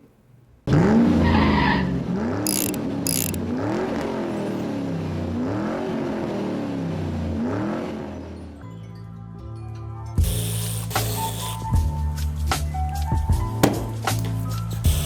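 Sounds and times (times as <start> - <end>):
power tool motor whirring: 2.5 - 3.4, 10.2 - 12.1.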